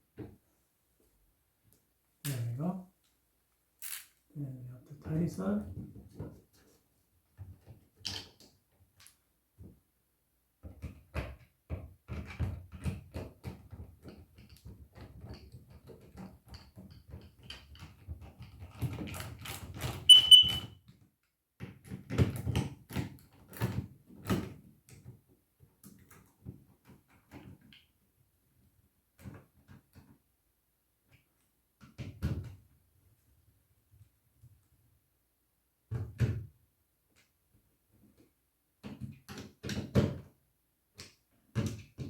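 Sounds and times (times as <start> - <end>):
brief high-pitched tone: 20.1 - 20.6.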